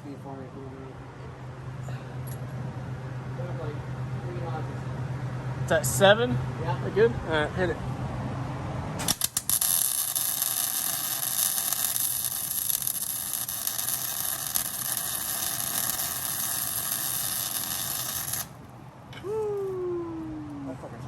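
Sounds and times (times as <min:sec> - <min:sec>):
welder arc crackling: 0:09.0 - 0:18.8.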